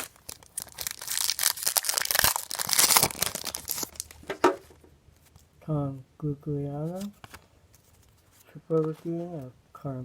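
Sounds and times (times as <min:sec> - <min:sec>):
wrapper crinkling and tearing: 0:00.0 - 0:04.5.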